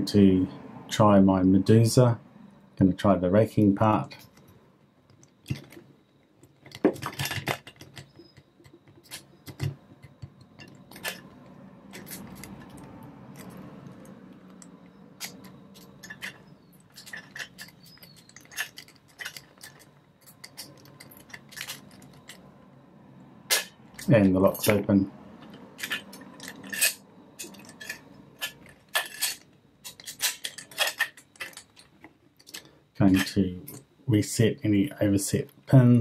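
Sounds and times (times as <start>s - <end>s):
lock pick scraping metal: 6.5s - 22.5s, 25.4s - 31.9s.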